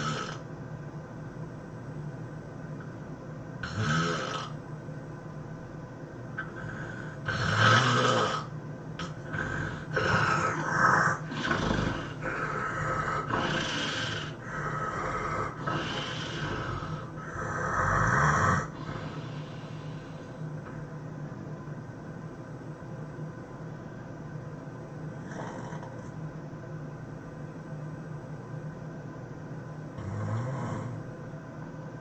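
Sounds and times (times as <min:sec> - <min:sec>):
person snoring loudly: 0:00.0 - 0:00.4, 0:03.6 - 0:04.6, 0:06.4 - 0:20.0, 0:30.0 - 0:31.1
steady low hum: 0:00.0 - 0:32.0.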